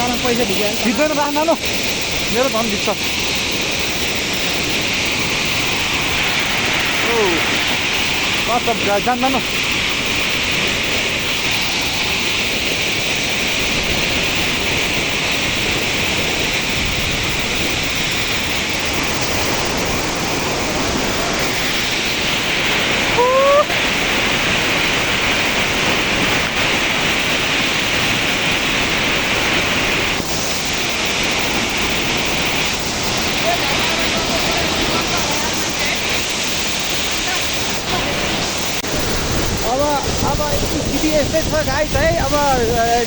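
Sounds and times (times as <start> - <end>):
waterfall rushing: 0.0 - 43.0
rising whistle-like call: 22.9 - 24.0.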